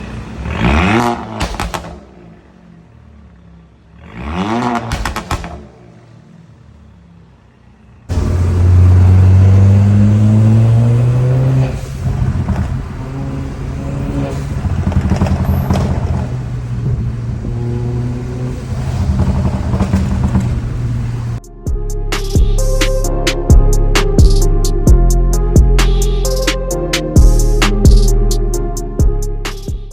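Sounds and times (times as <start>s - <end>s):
car engine revving with exhaust drone: 0.0s - 29.6s.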